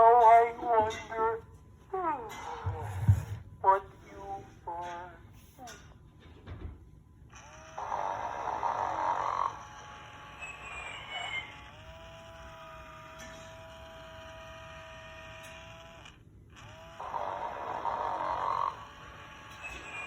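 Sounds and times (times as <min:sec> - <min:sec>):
toy snoring: 0:07.4 - 0:20.0.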